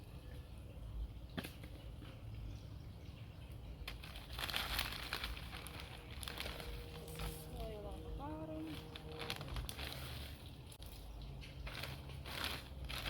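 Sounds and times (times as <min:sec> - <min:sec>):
potting soil rustling: 0:03.6 - 0:13.0.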